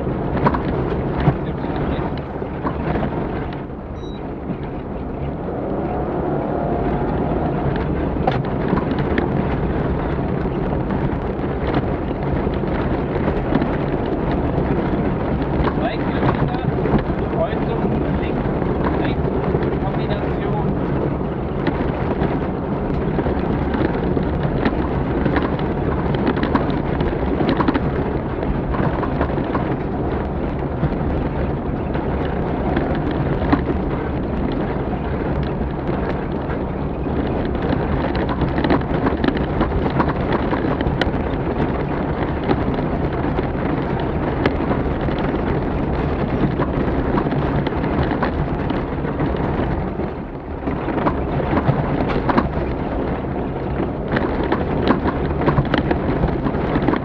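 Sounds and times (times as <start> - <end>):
gravel striking bodywork: 0.0 - 57.0
rally car engine rumble: 0.0 - 57.0
wind noise: 0.0 - 57.0.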